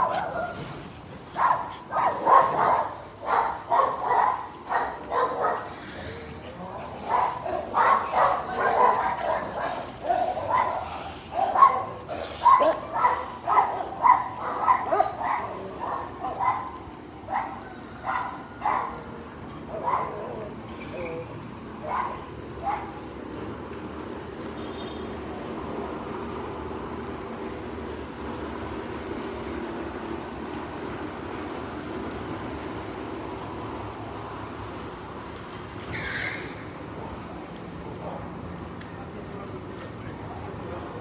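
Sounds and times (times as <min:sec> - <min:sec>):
dog barking: 0:00.0 - 0:00.7, 0:01.4 - 0:05.8, 0:07.0 - 0:19.1, 0:19.7 - 0:20.5, 0:21.8 - 0:23.0.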